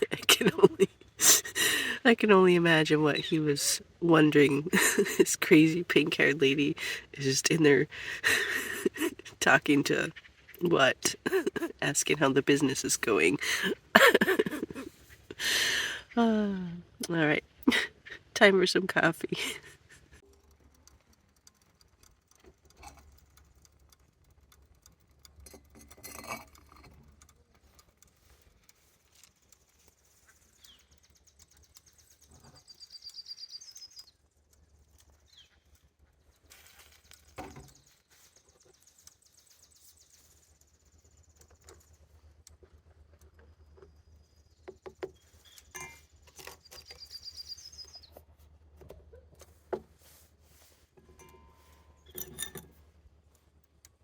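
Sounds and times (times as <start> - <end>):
small bird trilling song: 30.0 - 42.2, 43.5 - 48.3.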